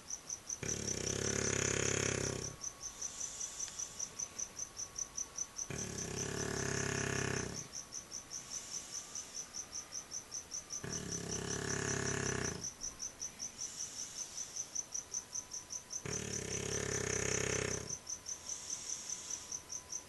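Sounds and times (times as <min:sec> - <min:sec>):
dog snoring: 0:00.6 - 0:03.4, 0:05.6 - 0:07.7, 0:10.8 - 0:12.7, 0:16.0 - 0:18.0.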